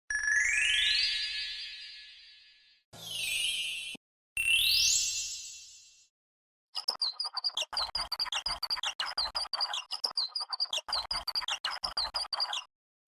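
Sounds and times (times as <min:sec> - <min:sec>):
shimmering chime effect: 0:03.0 - 0:05.7.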